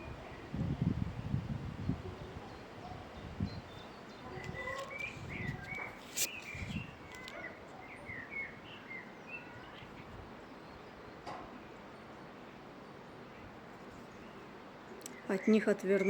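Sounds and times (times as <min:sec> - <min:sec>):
wind buffeting microphone: 0:00.0 - 0:08.7
small birds chirping: 0:00.0 - 0:16.0.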